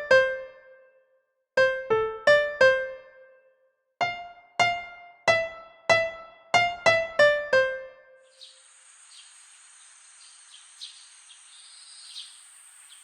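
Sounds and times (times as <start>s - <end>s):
electric piano notes: 1.6s - 3.1s, 4.0s - 8.0s.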